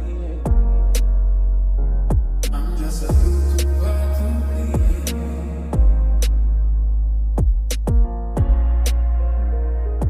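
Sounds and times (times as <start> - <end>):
deep steady bass: 0.0 - 10.0
kick drums dropping in pitch: 2.1 - 2.4, 3.1 - 3.4, 4.8 - 5.1, 7.4 - 8.7.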